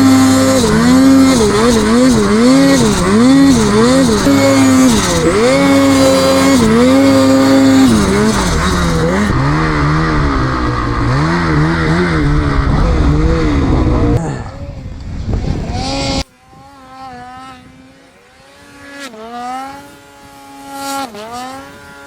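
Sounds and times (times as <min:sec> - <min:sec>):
snowmobile engine revving: 0:00.0 - 0:22.0
wind on microphone: 0:04.2 - 0:18.0.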